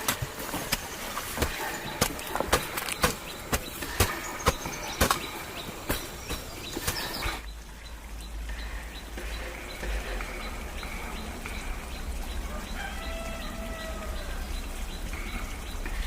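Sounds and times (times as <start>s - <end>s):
steady low hum: 0.0s - 12.5s
birds chirping: 0.0s - 16.0s.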